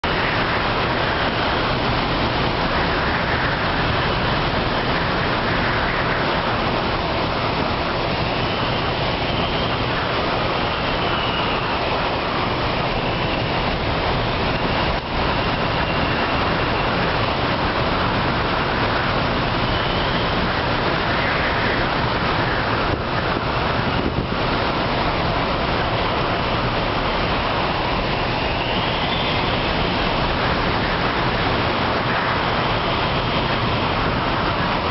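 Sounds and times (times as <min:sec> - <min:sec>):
strong wind gusting: 0:00.0 - 0:34.9
faint wavering whistle: 0:28.3 - 0:29.9.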